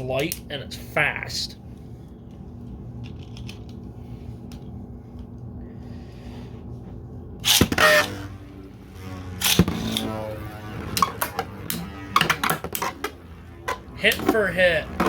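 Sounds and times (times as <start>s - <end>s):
falling whir of spinning tops: 7.4s - 15.0s.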